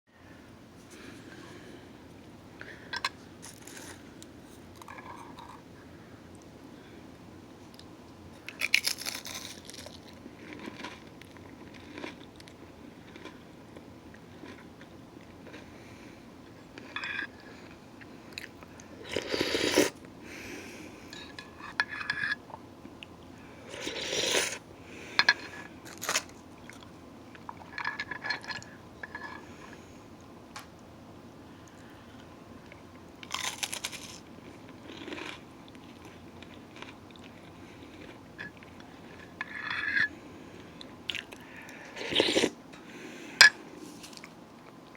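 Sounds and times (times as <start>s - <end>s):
crackers crunching being chewed: 3.0s - 4.0s, 7.8s - 15.8s, 25.2s - 29.4s, 31.7s - 40.0s, 40.8s - 42.6s.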